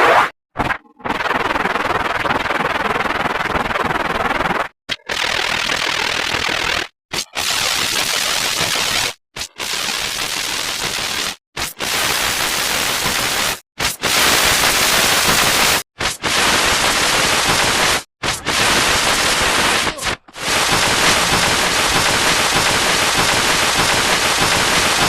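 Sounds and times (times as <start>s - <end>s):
harsh static hiss: 8.4s - 25.0s.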